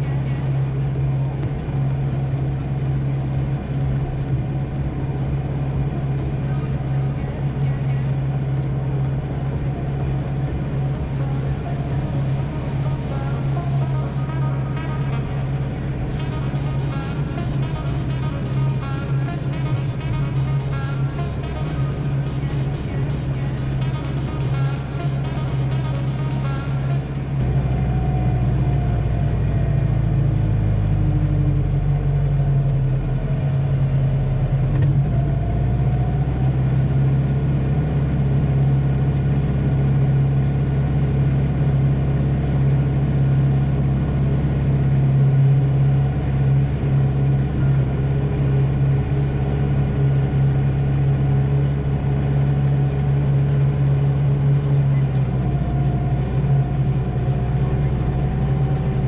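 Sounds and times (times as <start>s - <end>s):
tractor diesel engine running: 0.0s - 14.2s, 15.9s - 28.2s
faint whine: 0.0s - 30.1s, 32.0s - 59.0s.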